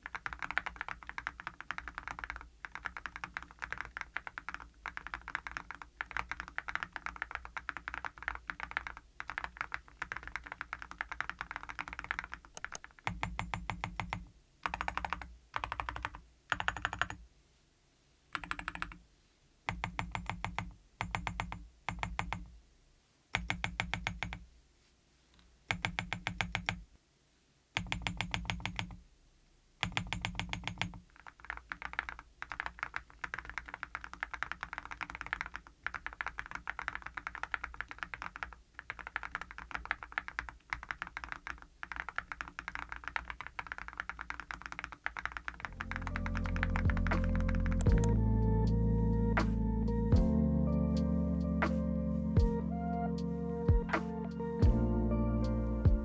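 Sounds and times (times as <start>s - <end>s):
mechanical keyboard typing: 0.0s - 17.2s, 18.4s - 19.0s, 19.7s - 22.5s, 23.4s - 24.4s, 25.7s - 26.8s, 27.8s - 29.0s, 29.8s - 48.2s
rapid keyboard key presses: 0.0s - 17.2s, 18.4s - 19.0s, 19.7s - 22.5s, 23.4s - 24.4s, 25.7s - 26.8s, 27.8s - 29.0s, 29.8s - 48.2s.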